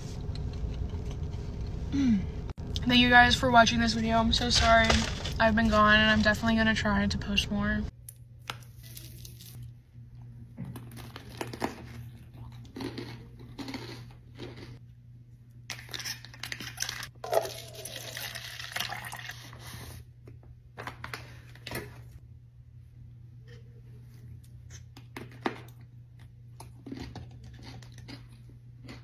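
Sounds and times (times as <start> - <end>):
low hum: 0.0 - 12.5
food packaging crinkling: 4.3 - 6.5, 8.5 - 9.6.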